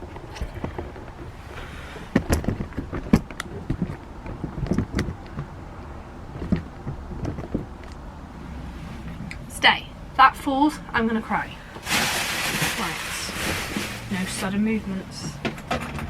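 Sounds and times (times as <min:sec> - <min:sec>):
household items knocking and rustling: 0:11.8 - 0:16.0.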